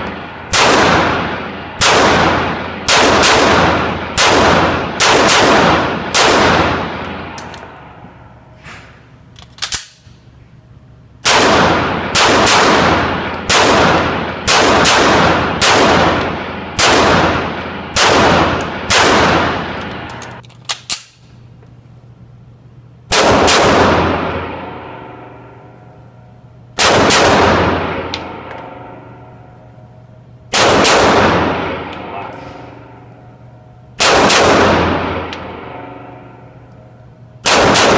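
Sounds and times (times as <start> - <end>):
pistol shots with echoing tail: 0.0 - 7.8, 11.2 - 20.2, 23.1 - 25.0, 26.8 - 29.0, 30.5 - 32.9, 34.0 - 36.5, 37.4 - 37.9.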